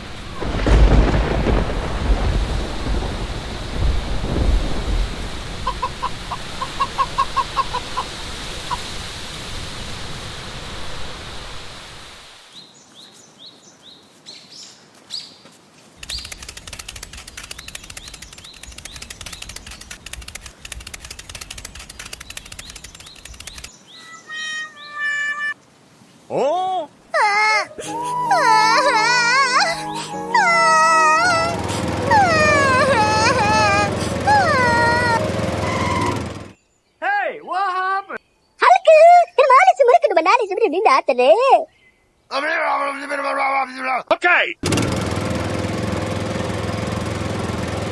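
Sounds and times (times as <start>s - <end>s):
steady rain-like noise: 0.0s - 13.4s
falling bird chirps: 12.5s - 25.6s
fast fluttering patter: 16.0s - 23.7s, 31.3s - 36.0s.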